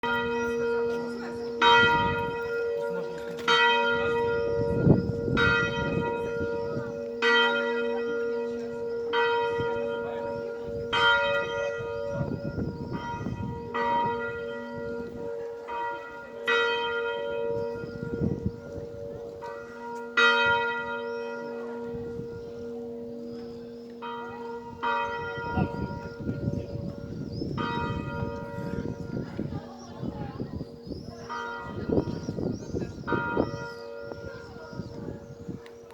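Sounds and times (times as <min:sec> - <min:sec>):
church bells ringing: 0:00.0 - 0:35.9.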